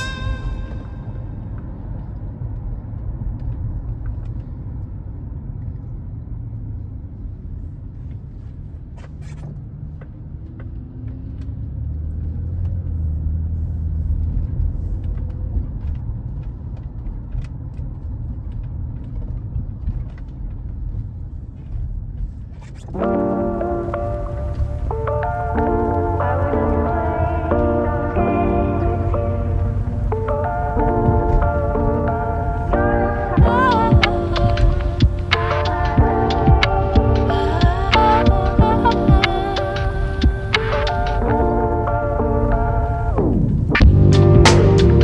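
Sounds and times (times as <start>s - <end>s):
car engine rumbling: 23.6s - 45.0s.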